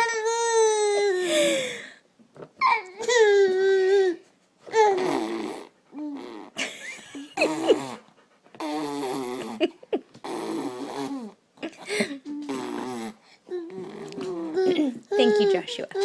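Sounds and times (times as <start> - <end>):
baby whiny babbling cries: 0.0 - 1.7, 2.6 - 5.3.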